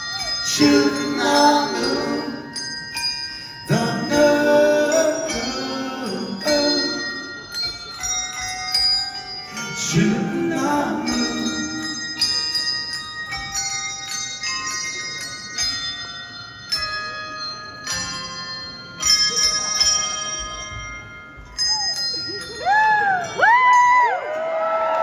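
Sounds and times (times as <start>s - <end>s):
tuned bells ringing a melody: 0.0s - 25.0s
crowd whooping: 22.6s - 25.0s.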